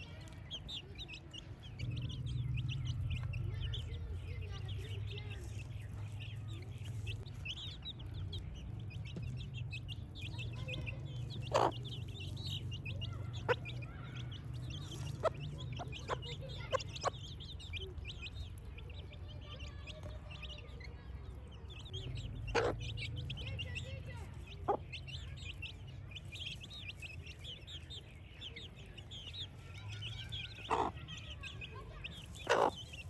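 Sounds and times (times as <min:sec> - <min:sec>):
baby chicks peeping: 0:00.0 - 0:33.0.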